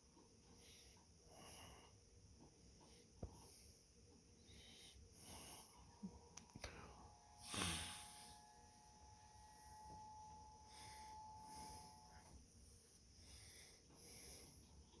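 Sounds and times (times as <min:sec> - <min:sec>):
breathing close to microphone: 0:06.6 - 0:08.4.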